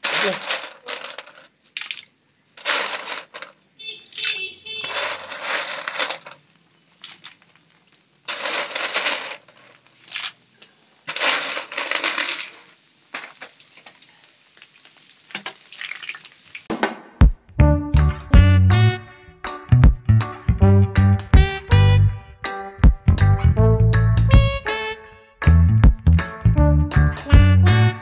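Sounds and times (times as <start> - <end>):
crunching and crackling: 0.0 - 16.3.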